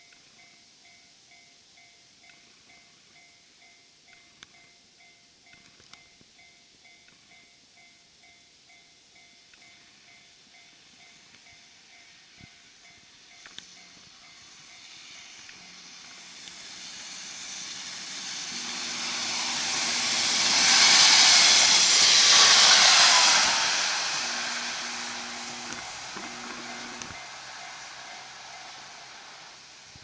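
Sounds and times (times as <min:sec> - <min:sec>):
train wheels on rails: 0:09.5 - 0:30.0
diesel engine running: 0:15.7 - 0:29.4.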